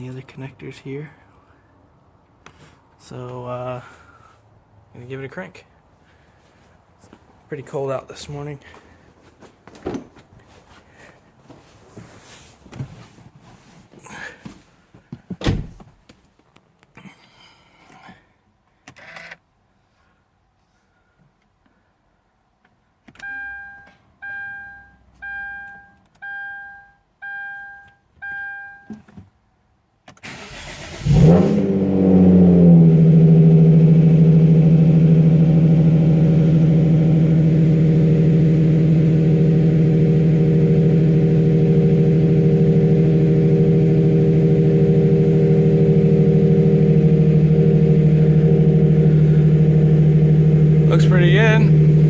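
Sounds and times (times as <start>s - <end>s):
two-tone warning chimes: 23.2s - 28.9s
car engine starting and idling: 30.2s - 52.0s.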